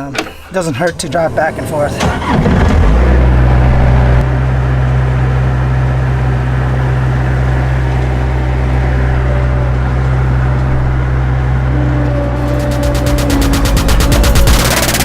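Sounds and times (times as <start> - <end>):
vehicle engine humming: 0.0 - 15.0.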